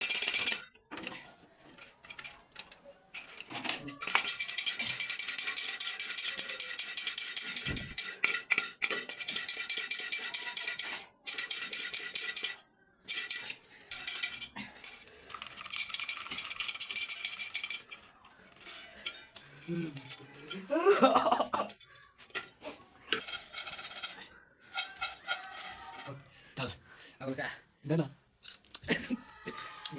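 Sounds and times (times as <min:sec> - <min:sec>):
popcorn popping in metal pot: 0:00.0 - 0:00.6, 0:03.2 - 0:14.6, 0:15.4 - 0:20.6, 0:23.2 - 0:26.1.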